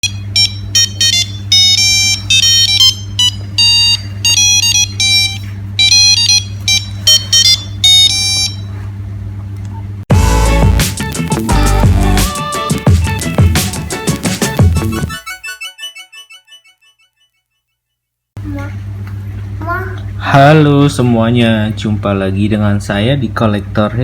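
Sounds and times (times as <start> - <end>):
phone ringtone beeping melody: 0.0 - 8.6, 11.2 - 17.2
loud music with drums: 10.1 - 15.2.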